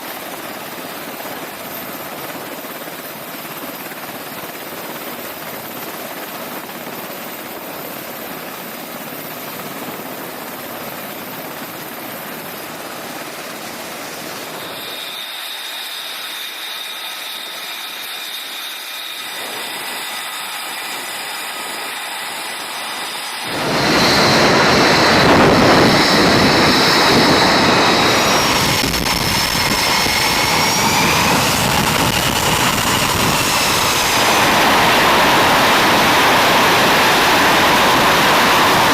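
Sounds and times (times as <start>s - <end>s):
jet engine roaring and whining: 0.0s - 38.9s.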